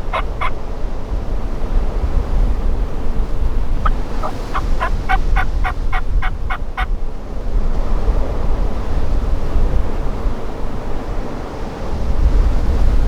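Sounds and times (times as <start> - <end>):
turkey gobbling: 0.0 - 0.6, 3.8 - 6.9
wind noise on microphone: 0.0 - 13.0.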